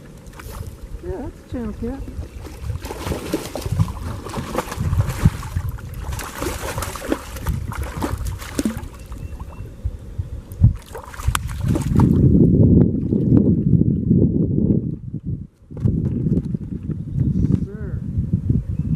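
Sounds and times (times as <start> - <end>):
water splashing: 0.0 - 9.6, 10.7 - 12.3.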